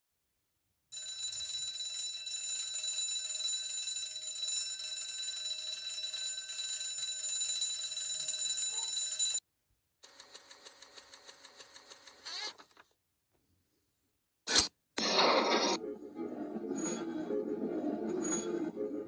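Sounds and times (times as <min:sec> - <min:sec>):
electric alarm bell ringing: 0:00.9 - 0:09.4.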